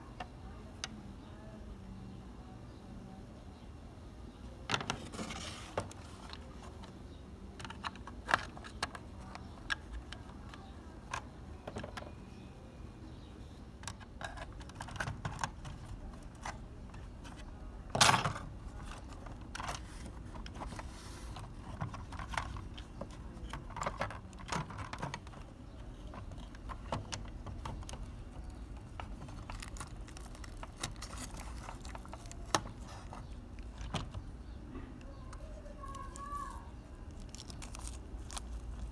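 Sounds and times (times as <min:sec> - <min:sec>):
tools and metal parts clicking: 0:17.9 - 0:18.4.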